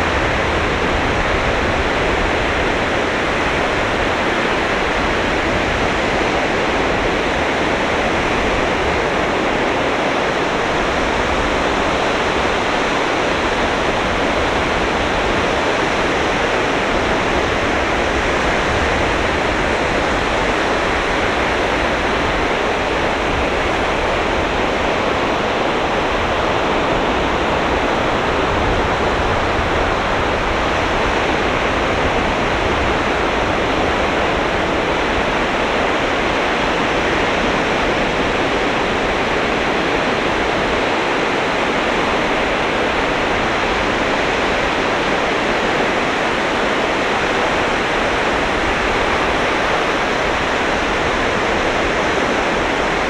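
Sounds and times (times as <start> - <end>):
surf breaking on beach: 0.0 - 53.0.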